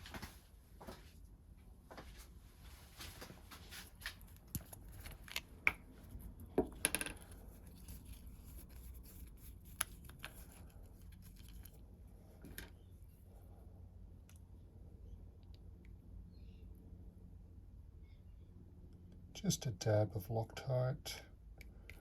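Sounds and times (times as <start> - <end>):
small tools clicking and scratching: 4.0 - 11.8.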